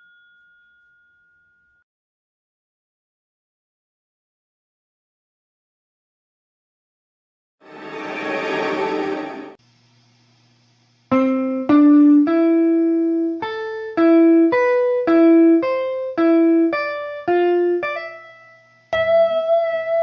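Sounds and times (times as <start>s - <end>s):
piano-like keyboard notes: 11.5s - 20.0s.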